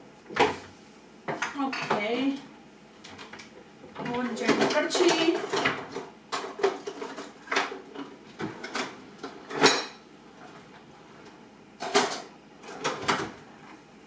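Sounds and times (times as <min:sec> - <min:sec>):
kitchen utensils clinking: 0:04.0 - 0:07.8, 0:08.6 - 0:10.0.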